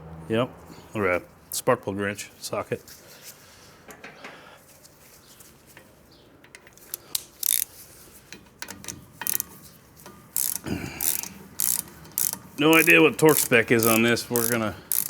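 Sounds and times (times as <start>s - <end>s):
socket ratchet clicking: 6.4s - 7.7s, 8.3s - 15.0s.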